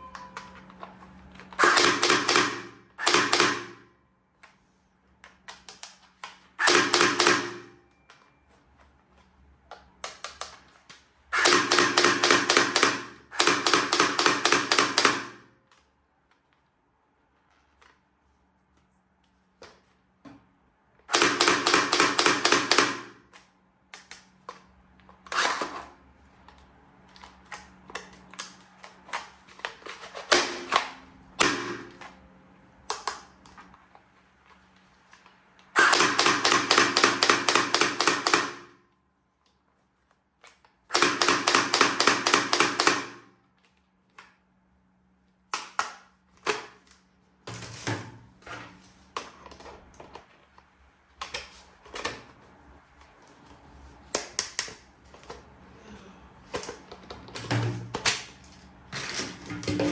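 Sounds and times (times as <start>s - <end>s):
toy gun rapid clicking: 1.6s - 3.7s, 6.6s - 7.6s, 11.4s - 15.3s, 21.1s - 23.0s, 35.8s - 38.6s, 40.9s - 43.2s.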